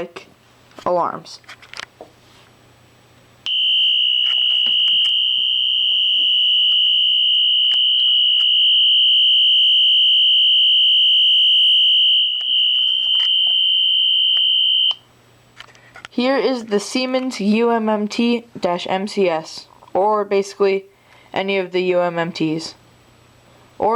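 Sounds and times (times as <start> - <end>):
high-pitched alarm tone: 3.5 - 15.0.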